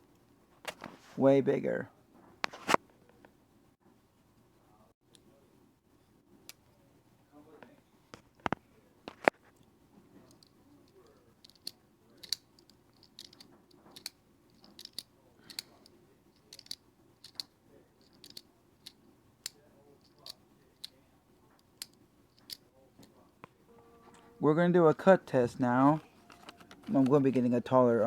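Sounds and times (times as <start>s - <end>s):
folding knife clicking: 11.4s - 20.4s.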